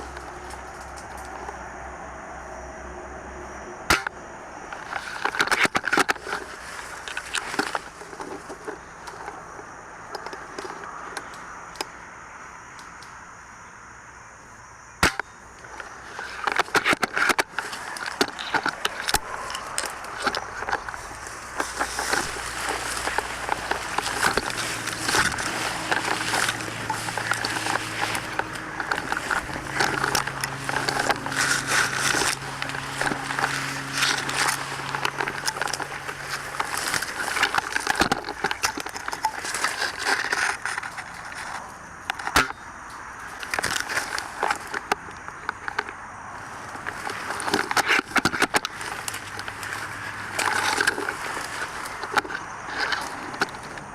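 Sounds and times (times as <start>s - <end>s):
footsteps through dry leaves: 6.2s - 9.0s, 17.6s - 41.4s, 46.4s - 52.0s.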